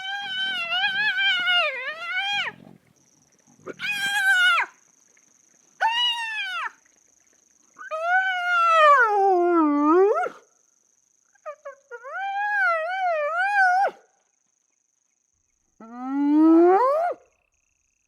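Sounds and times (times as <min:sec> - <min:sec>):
hyena squealing calls: 0:00.0 - 0:02.7, 0:03.6 - 0:04.8, 0:05.8 - 0:06.8.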